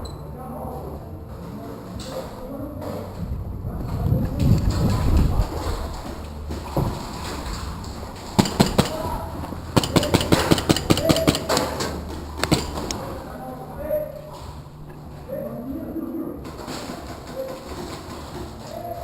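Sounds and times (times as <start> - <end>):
low rumble of movement: 0.0 - 11.0
airsoft guns firing: 8.2 - 13.3.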